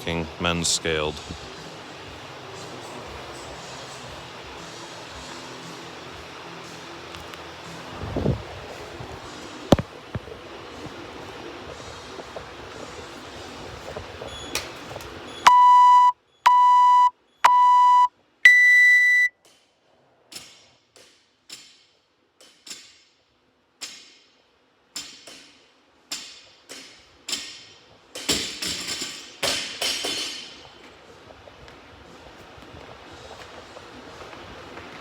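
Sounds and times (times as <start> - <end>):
timer beeps: 15.4 - 19.3
longer higher beep: 15.5 - 19.3.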